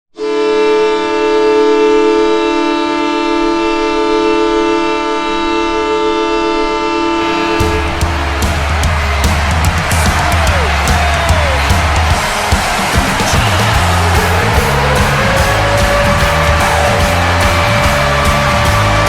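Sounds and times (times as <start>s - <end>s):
goal horn blast: 0.1s - 19.0s
drums and bass music: 7.2s - 19.0s.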